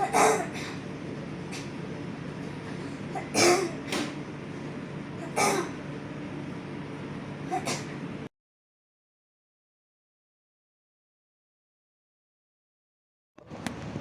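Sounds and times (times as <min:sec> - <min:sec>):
child coughing: 0:00.0 - 0:00.8, 0:03.1 - 0:04.1, 0:05.2 - 0:05.8, 0:07.5 - 0:08.0.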